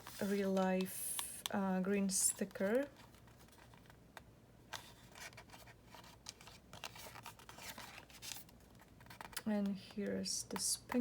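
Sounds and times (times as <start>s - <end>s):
paper pages rustling: 0.0s - 1.3s, 2.1s - 4.0s, 4.7s - 9.5s.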